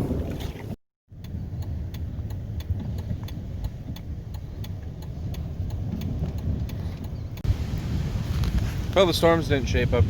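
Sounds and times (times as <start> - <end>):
tyre and engine rumble: 0.0 - 10.0
sharp ticks: 1.1 - 7.5.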